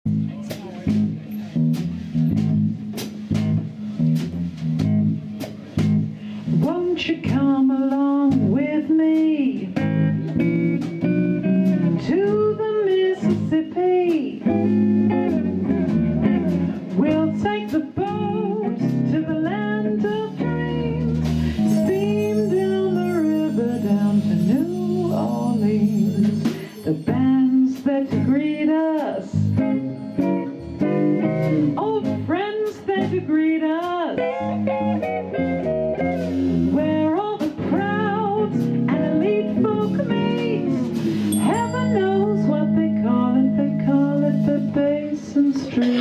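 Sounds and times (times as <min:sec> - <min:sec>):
bass guitar: 0:00.0 - 0:46.0
drums and cymbals: 0:00.1 - 0:46.0
lead guitar with bending notes: 0:09.8 - 0:27.5, 0:28.1 - 0:33.5, 0:34.1 - 0:45.0.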